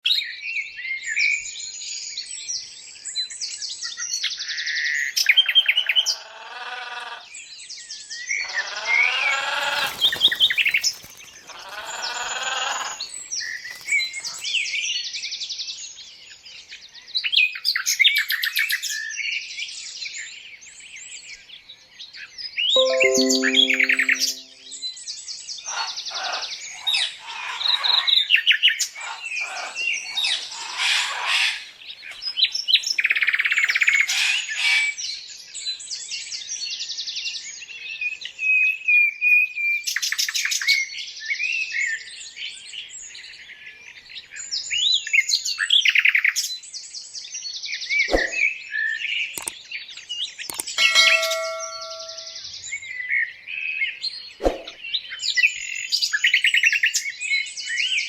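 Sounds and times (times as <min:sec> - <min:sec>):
birds chirping and trilling: 0:08.4 - 0:14.6, 0:50.2 - 0:53.4.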